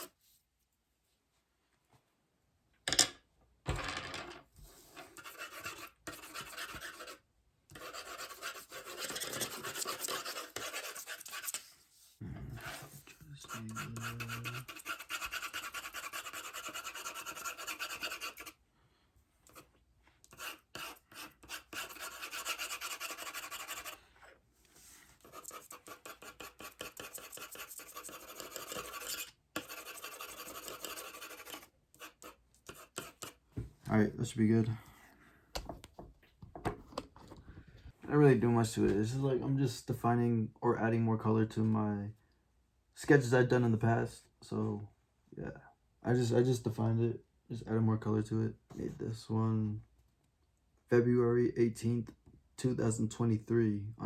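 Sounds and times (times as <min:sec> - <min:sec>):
colouring strokes scratching paper: 0:04.7 - 0:18.6, 0:20.3 - 0:24.1, 0:24.7 - 0:33.4.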